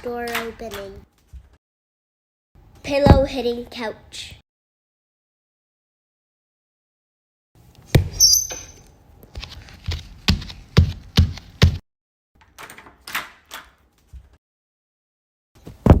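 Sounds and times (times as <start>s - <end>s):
short high squeak: 8.0s - 8.8s.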